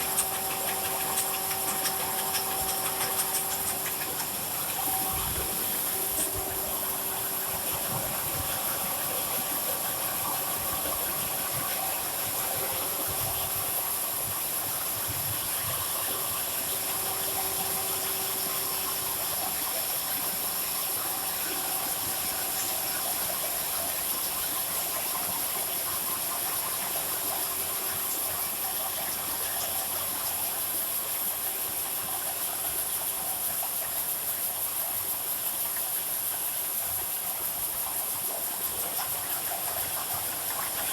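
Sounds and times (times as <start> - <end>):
faint hum: 0.0 - 14.0
welding machine hiss: 0.0 - 23.6.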